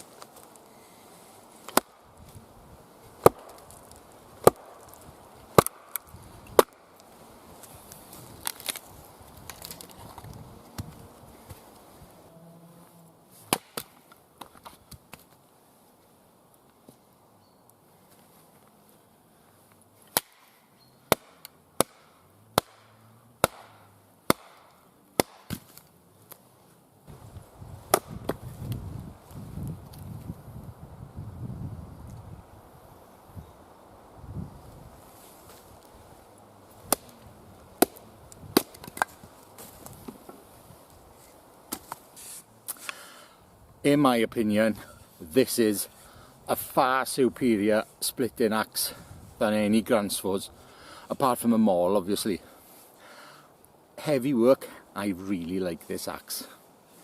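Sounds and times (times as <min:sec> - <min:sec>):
axe chopping wood: 0:01.6 - 0:02.0, 0:03.2 - 0:03.8, 0:04.4 - 0:06.8, 0:13.5 - 0:14.0, 0:20.1 - 0:20.5, 0:21.1 - 0:25.9, 0:27.9 - 0:28.4, 0:36.9 - 0:37.1, 0:37.8 - 0:39.2
low rustling noise: 0:25.7 - 0:42.8.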